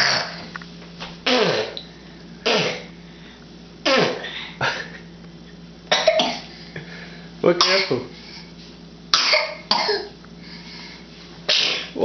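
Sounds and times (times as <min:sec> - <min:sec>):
person sneezing: 0:03.8 - 0:04.6, 0:11.5 - 0:12.0.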